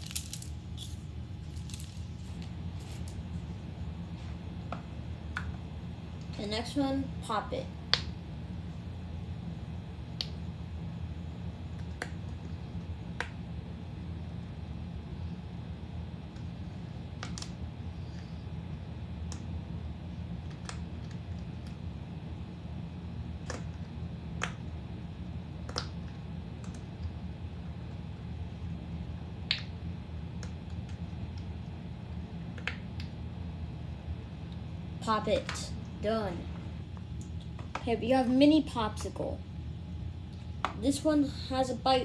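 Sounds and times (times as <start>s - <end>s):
low background hum: 0.0s - 42.0s.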